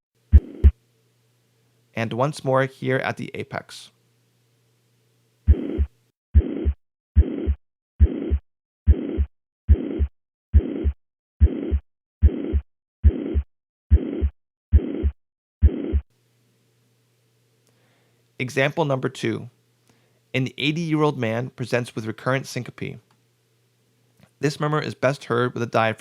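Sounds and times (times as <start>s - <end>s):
heartbeat through stethoscope: 0.3s - 0.8s, 5.5s - 16.0s
high-pitched heart murmur: 0.3s - 0.8s, 5.5s - 16.0s.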